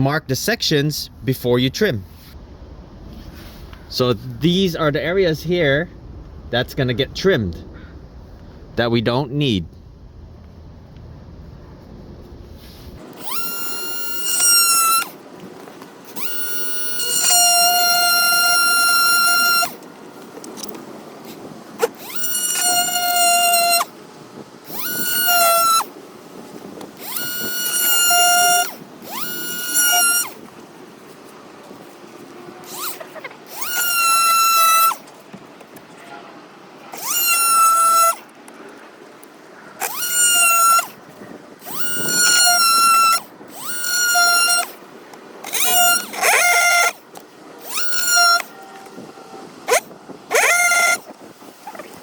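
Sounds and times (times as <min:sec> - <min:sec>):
oscillating multi-tool cutting plastic: 0:13.0 - 0:24.0, 0:24.6 - 0:26.0, 0:26.8 - 0:30.6, 0:32.5 - 0:35.2, 0:36.8 - 0:38.3, 0:39.8 - 0:41.0, 0:41.6 - 0:44.8, 0:45.4 - 0:52.0.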